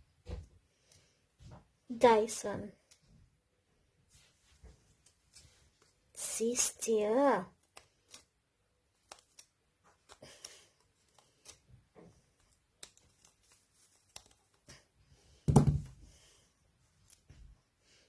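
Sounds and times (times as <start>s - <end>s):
plastic knock: 15.5s - 15.9s.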